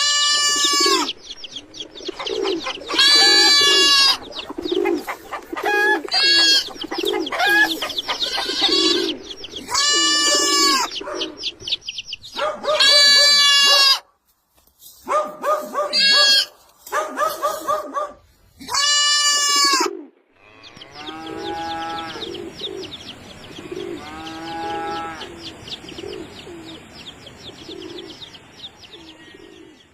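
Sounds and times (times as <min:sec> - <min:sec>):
animal bleating: 0:00.0 - 0:01.2, 0:02.9 - 0:04.2, 0:05.8 - 0:06.7, 0:07.4 - 0:10.9, 0:12.8 - 0:14.0, 0:15.9 - 0:16.6, 0:18.6 - 0:22.2, 0:24.0 - 0:25.3
high bird chirping: 0:00.4 - 0:12.8, 0:20.5 - 0:29.9
low cooing: 0:02.2 - 0:09.3, 0:21.1 - 0:26.8.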